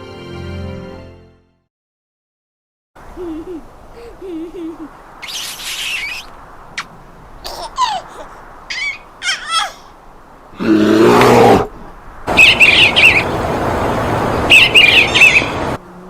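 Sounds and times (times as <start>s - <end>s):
squawking calls: 5.2s - 6.9s, 8.7s - 9.8s, 12.3s - 15.8s
steady rushing noise: 11.7s - 15.8s.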